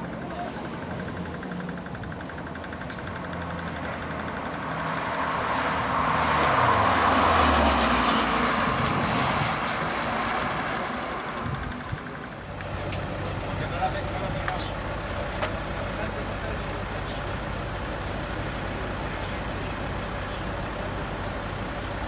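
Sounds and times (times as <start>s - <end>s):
car engine passing by: 3.8s - 12.4s.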